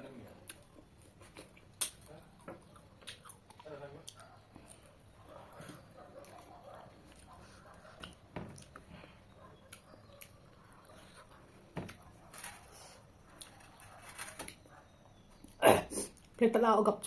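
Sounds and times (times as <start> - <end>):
person chewing food: 0.4 - 16.4
mouth clicks and smacks: 0.5 - 4.9.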